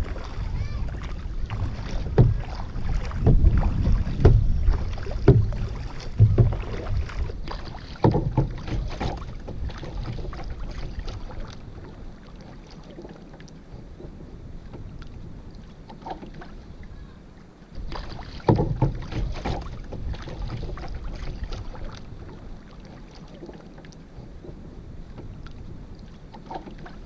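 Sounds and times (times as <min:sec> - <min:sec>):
wind on microphone: 0:00.0 - 0:12.2
paddle strokes splashing: 0:00.0 - 0:27.0
soft water noise: 0:00.0 - 0:27.0.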